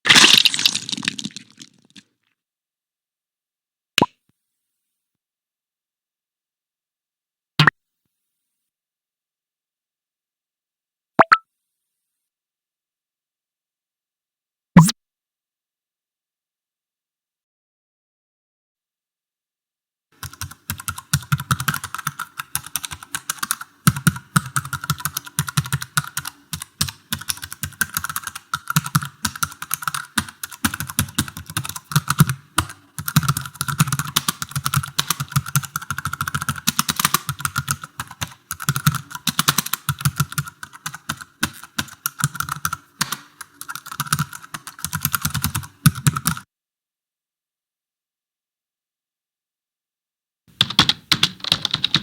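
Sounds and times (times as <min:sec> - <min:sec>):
fast typing on keyboard: 0:20.2 - 0:46.4, 0:50.5 - 0:52.0.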